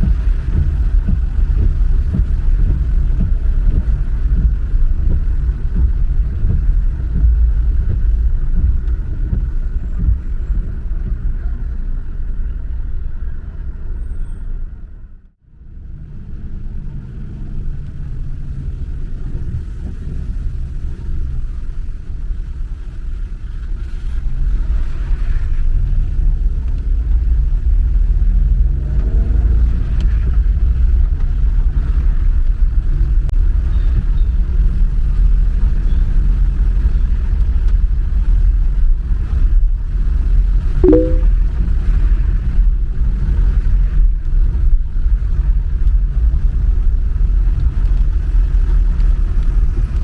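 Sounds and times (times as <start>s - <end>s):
car road and engine rumble: 0.0s - 33.7s.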